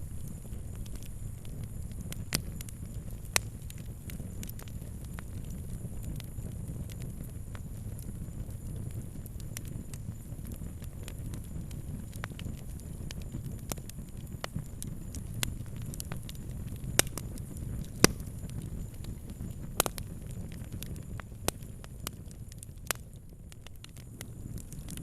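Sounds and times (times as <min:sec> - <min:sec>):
fire crackling: 0:00.0 - 0:25.0
low rush of flames: 0:00.0 - 0:25.0.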